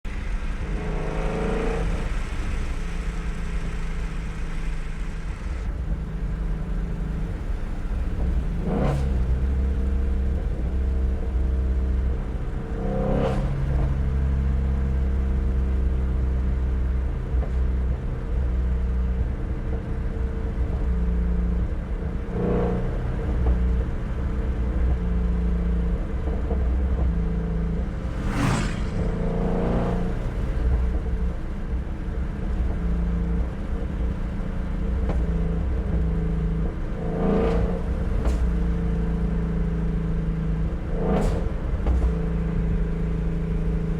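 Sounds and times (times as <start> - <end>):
car engine running: 0.0 - 43.9.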